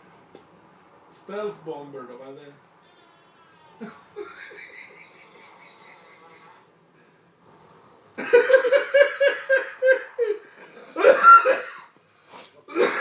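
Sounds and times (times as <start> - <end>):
person laughing hard: 3.8 - 6.6, 8.2 - 10.4.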